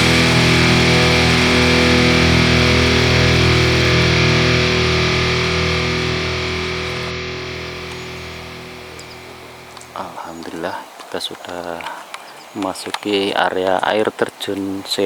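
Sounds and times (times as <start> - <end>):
rock music: 0.0 - 10.0
held electric guitar chord: 0.0 - 10.1.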